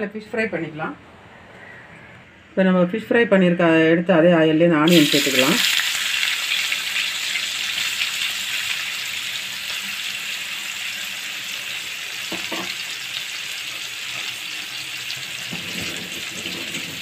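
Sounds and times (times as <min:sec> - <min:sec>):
hot oil sizzling in a frying pan: 0:04.9 - 0:17.0.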